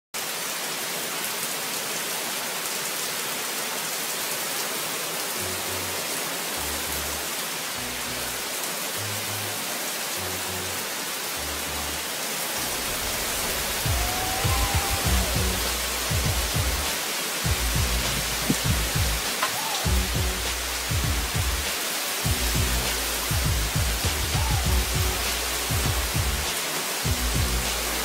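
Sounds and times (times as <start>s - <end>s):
heavy rain hissing: 0.2s - 28.0s
low bass notes of music: 6.6s - 10.8s, 11.4s - 16.9s, 17.5s - 19.3s, 19.9s - 21.7s, 22.3s - 28.0s
heavy low thumps: 12.7s - 16.9s, 17.5s - 19.3s, 19.9s - 21.7s, 22.3s - 26.5s.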